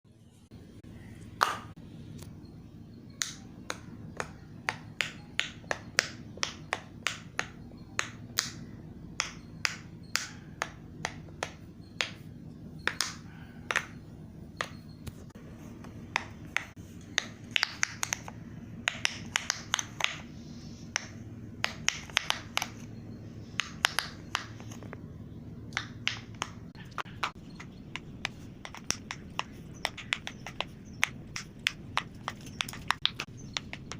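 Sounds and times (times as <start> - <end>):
steady low hum: 0.1 - 33.9.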